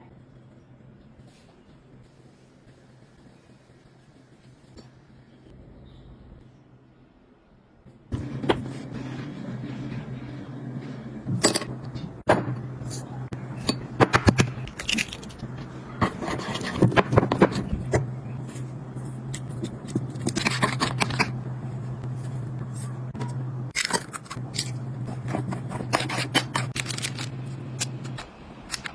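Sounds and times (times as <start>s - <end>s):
steady low hum: 0.0s - 28.9s
utensils and containers clinking: 11.3s - 12.1s, 13.6s - 18.6s, 19.3s - 21.3s, 23.2s - 28.9s.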